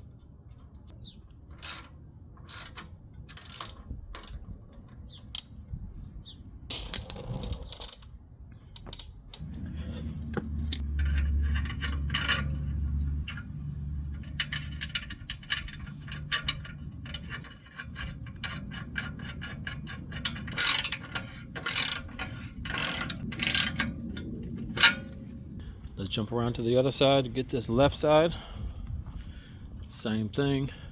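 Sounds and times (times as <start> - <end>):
hand ratchet clicking: 1.6 - 1.9, 2.5 - 4.4, 10.4 - 10.8, 20.2 - 23.8
metal tools clinking: 1.6 - 1.9, 2.5 - 4.4, 6.7 - 8.1, 10.0 - 12.6, 20.4 - 23.8.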